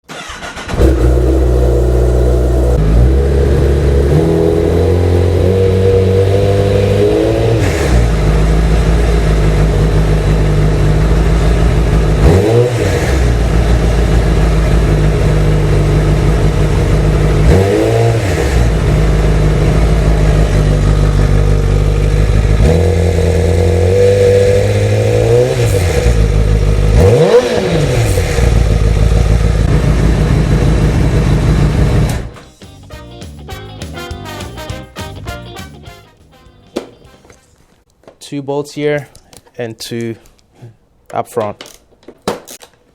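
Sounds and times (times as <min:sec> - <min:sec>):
motorcycle engine idling and revving: 0:00.1 - 0:32.4.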